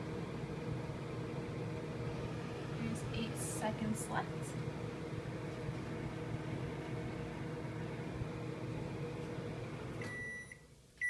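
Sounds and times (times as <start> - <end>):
microwave oven humming: 0.0 - 11.0
microwave beep: 10.0 - 10.7.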